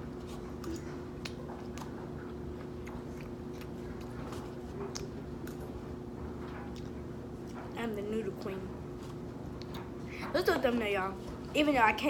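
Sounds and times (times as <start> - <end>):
steady low hum: 0.0 - 12.0
person chewing food: 0.2 - 7.8, 9.0 - 10.1.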